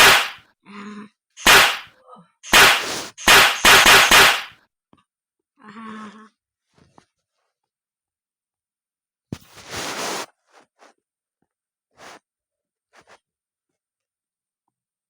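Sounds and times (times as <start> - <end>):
sharp loud bangs: 0.0 - 0.4, 1.4 - 4.5.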